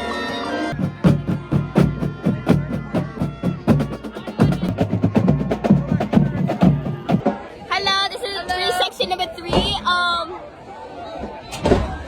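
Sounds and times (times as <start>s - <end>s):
marching drumline cadence: 0.7s - 7.5s.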